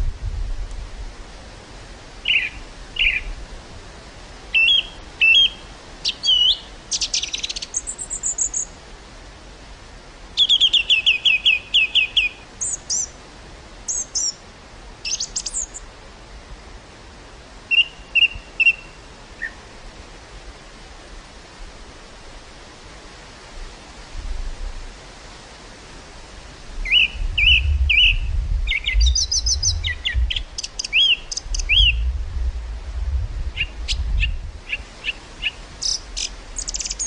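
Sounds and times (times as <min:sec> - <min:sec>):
wind hiss: 0:00.0 - 0:37.0
songbirds singing: 0:02.2 - 0:03.4, 0:04.5 - 0:08.8, 0:10.4 - 0:13.2, 0:13.9 - 0:14.4, 0:15.0 - 0:15.9, 0:17.7 - 0:19.7, 0:26.8 - 0:32.1, 0:33.5 - 0:37.0.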